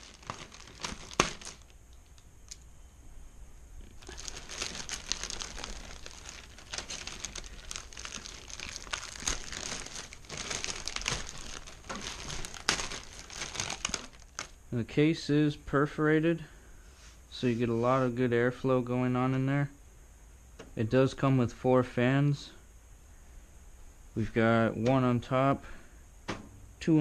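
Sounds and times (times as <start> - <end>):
plastic packaging crinkling: 0.0 - 2.2, 3.8 - 14.6.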